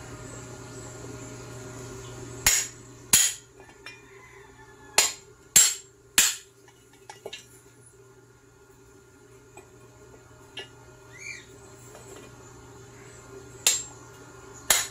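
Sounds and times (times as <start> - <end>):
hammer strikes on metal: 2.4 - 3.5, 5.0 - 6.5, 13.6 - 13.9, 14.7 - 14.9.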